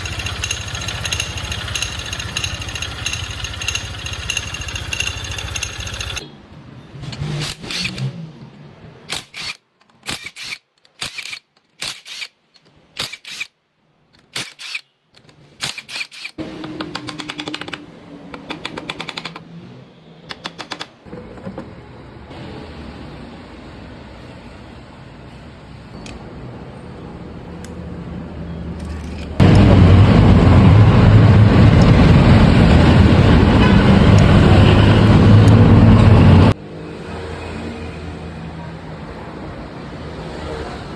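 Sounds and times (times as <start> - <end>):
scooter engine clattering: 0.0 - 6.3.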